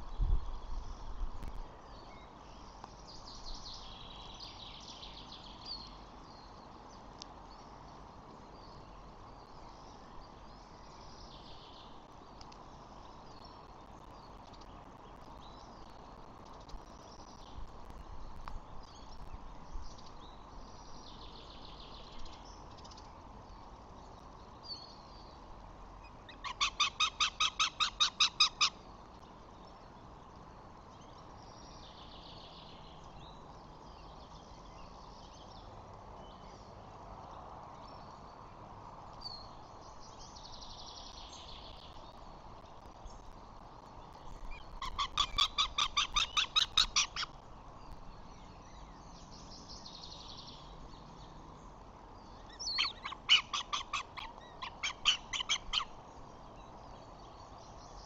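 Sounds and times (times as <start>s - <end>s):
bird rapid chattering call: 44.8s - 47.3s, 52.6s - 55.9s.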